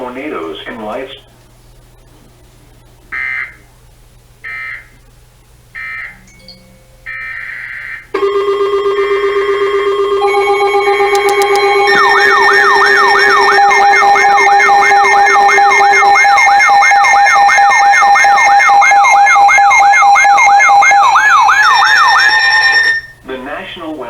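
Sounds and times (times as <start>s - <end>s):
steady held tones: 8.1s - 23.3s
electronic alert tone yelp: 8.2s - 23.2s.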